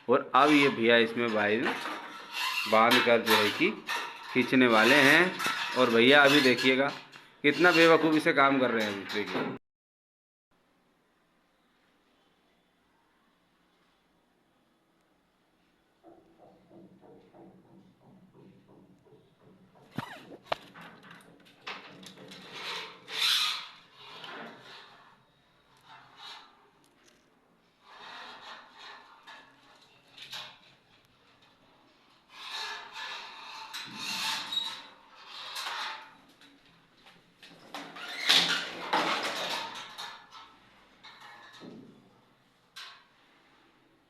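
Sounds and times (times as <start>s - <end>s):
wires scraping through conduit: 0.4s - 9.3s, 19.9s - 36.5s.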